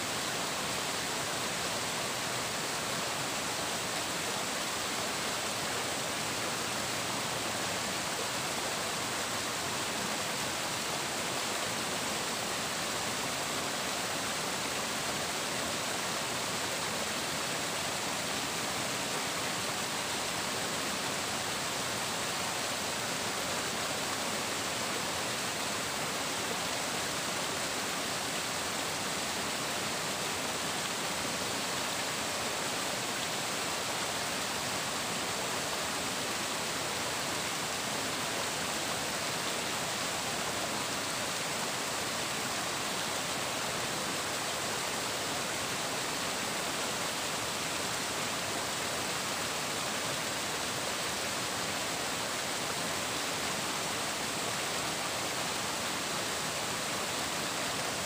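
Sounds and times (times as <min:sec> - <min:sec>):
flowing water: 0:00.0 - 0:58.0.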